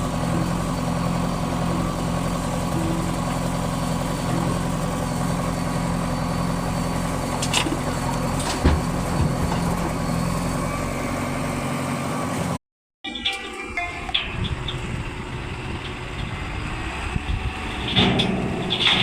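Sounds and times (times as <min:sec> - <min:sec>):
heavy diesel engine running: 0:00.0 - 0:12.6, 0:13.6 - 0:19.0.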